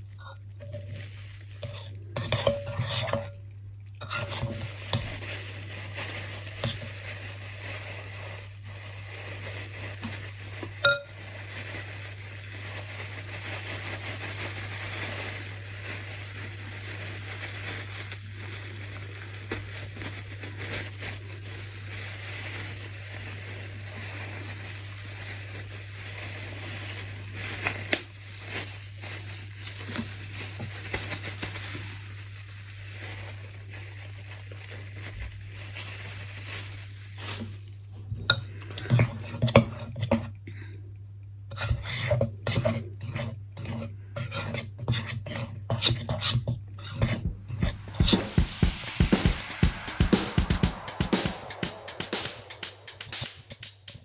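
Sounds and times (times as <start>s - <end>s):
utensil scraping mixing bowl: 1.6s - 3.4s, 4.0s - 5.2s, 41.5s - 48.7s
utensil knocking on bowl: 47.0s - 54.0s.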